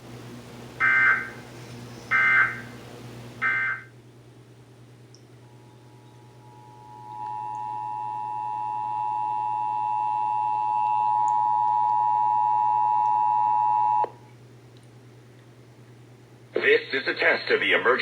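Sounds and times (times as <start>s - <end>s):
harsh two-tone alert signal: 3.4s - 3.9s.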